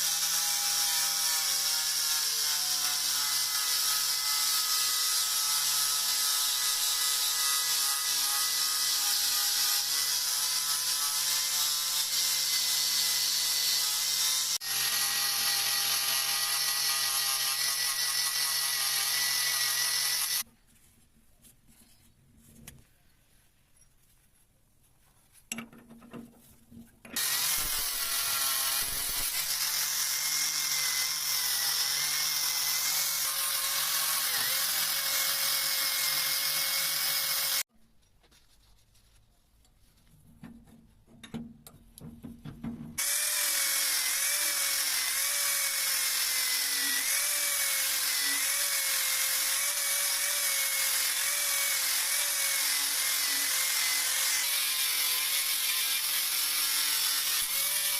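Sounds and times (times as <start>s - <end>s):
electric power tool whining: 12.3s - 20.4s, 27.2s - 37.7s, 43.0s - 57.9s.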